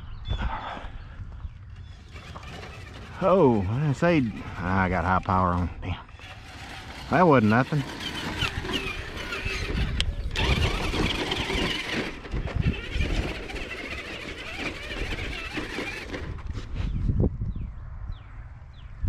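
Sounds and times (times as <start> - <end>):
low rumble driving on dirt: 0.0 - 19.0
electric motor and gears whining: 0.8 - 17.1.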